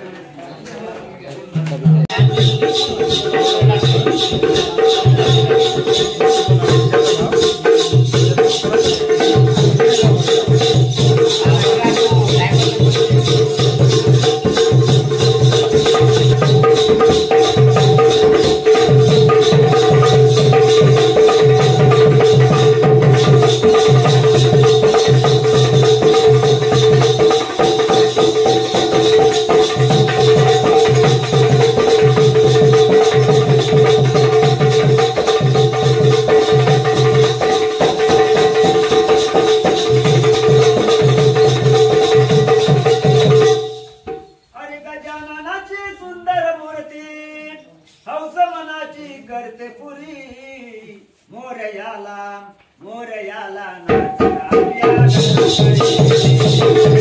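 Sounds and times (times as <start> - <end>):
fast jingling shaker rhythm: 2.1 - 44.6, 54.8 - 57.0
low drumbeat: 8.0 - 27.0.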